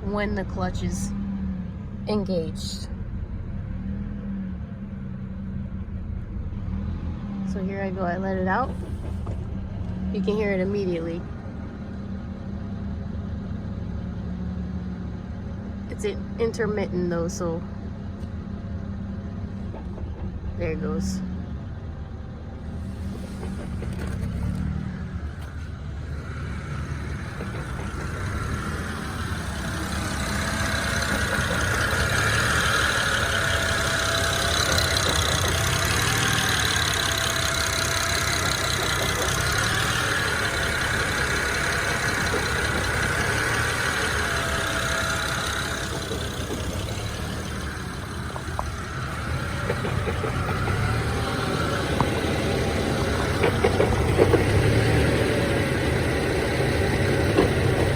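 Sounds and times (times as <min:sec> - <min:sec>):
clacking under car: 0:07.5 - 0:11.6, 0:18.0 - 0:57.9
car engine idling roughly: 0:08.0 - 0:11.7, 0:22.6 - 0:57.9.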